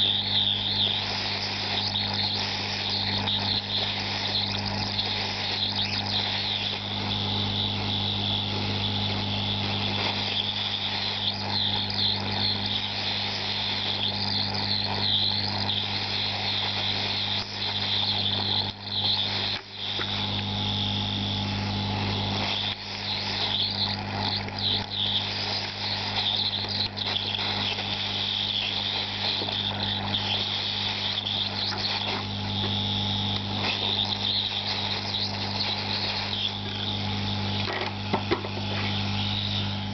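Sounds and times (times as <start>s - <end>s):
hot-air soldering station blowing: 0.0s - 39.9s.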